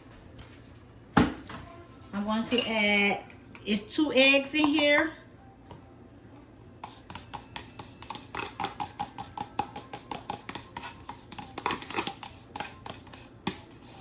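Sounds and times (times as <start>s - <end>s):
fork beating eggs in a bowl: 6.8s - 14.0s.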